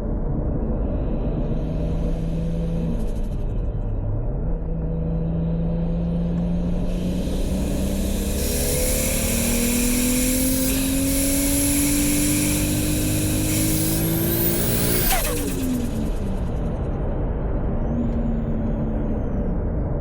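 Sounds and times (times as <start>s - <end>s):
car engine revving: 4.6s - 19.7s
turbo flutter: 6.9s - 17.0s.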